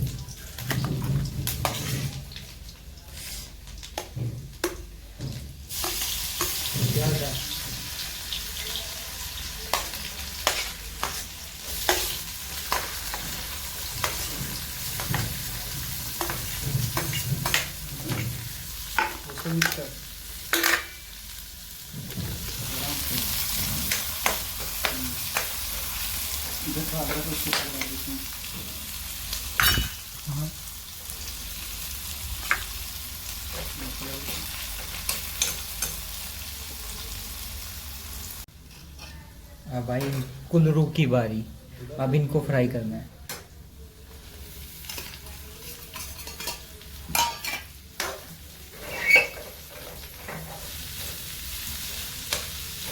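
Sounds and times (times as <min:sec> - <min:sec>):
food sizzling in hot oil: 0:00.0 - 0:41.1, 0:43.6 - 0:52.9
spatula scraping a pan: 0:01.6 - 0:02.2, 0:44.8 - 0:52.9.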